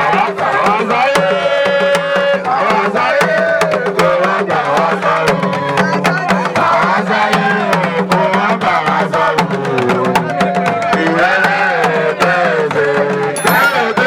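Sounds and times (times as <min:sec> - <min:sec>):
fast steady drumming: 0:00.0 - 0:14.0
bending melody: 0:13.4 - 0:14.0.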